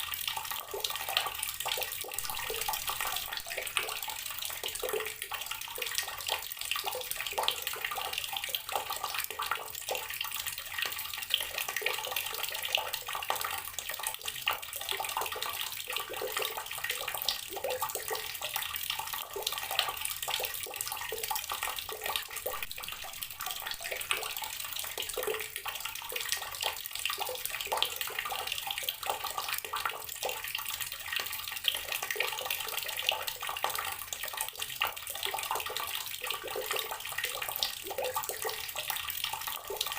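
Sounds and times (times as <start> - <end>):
tap water pouring into container: 0.0 - 39.9.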